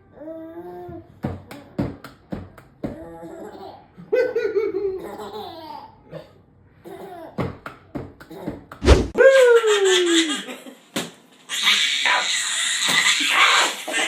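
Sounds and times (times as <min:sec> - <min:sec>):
baby laughing and squealing: 0:09.1 - 0:10.6, 0:11.5 - 0:14.0.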